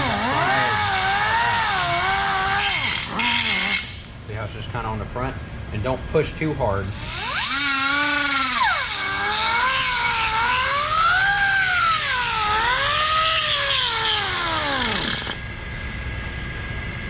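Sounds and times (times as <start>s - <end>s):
angle grinder grinding metal: 0.0s - 4.1s, 6.9s - 15.4s.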